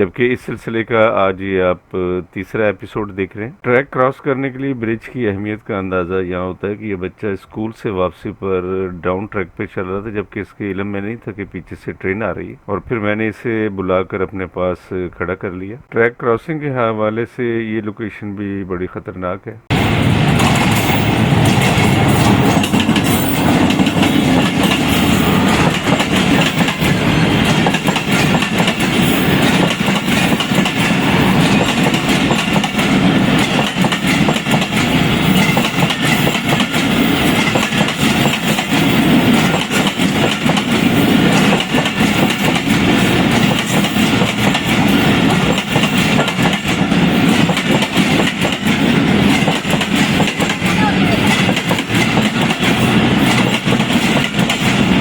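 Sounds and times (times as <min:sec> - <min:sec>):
train rumbling on track: 0:19.7 - 0:55.0
wheels clattering over rails: 0:19.7 - 0:55.0.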